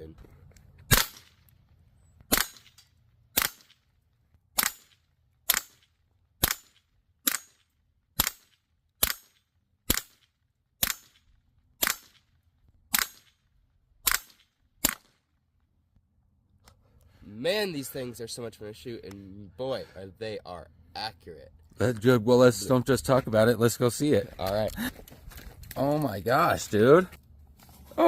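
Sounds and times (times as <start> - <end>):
air pistol shots: 0.9 - 1.4, 2.3 - 3.8, 4.6 - 5.8, 6.4 - 7.6, 8.2 - 10.2, 10.8 - 11.2, 11.8 - 12.2, 12.9 - 13.4, 14.0 - 15.2.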